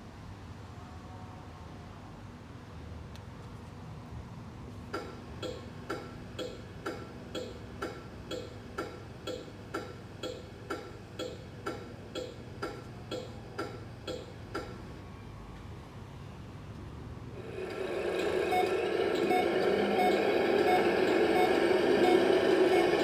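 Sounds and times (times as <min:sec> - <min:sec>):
electronic blinker clicks: 0:05.0 - 0:14.8
steady low hum: 0:17.2 - 0:23.0.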